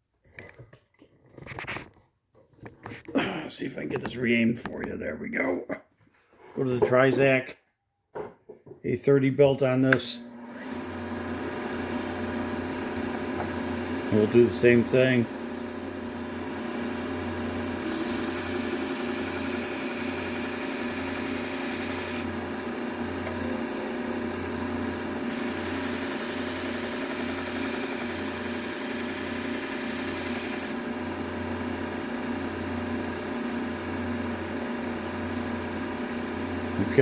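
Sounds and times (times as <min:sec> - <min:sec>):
belt sander running: 0:09.9 - 0:37.0.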